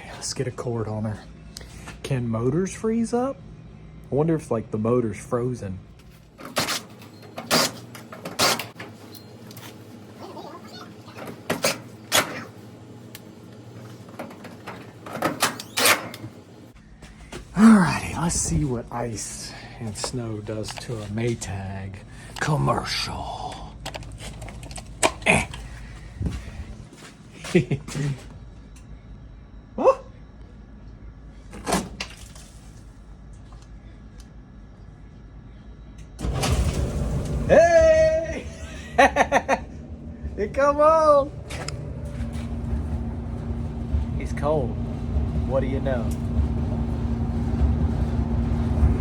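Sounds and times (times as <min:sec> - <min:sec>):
faint steady hum: 0:00.0 - 0:11.3, 0:12.0 - 0:49.0
dryer motor and drum running: 0:04.8 - 0:28.7, 0:36.0 - 0:49.0.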